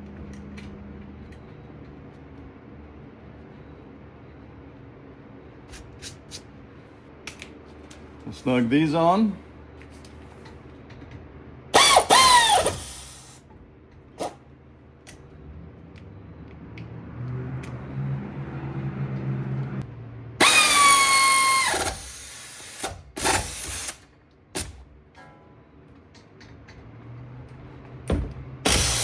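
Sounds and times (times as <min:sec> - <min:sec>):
cordless power tool whining: 0:11.8 - 0:13.4, 0:20.4 - 0:24.0, 0:28.6 - 0:29.0.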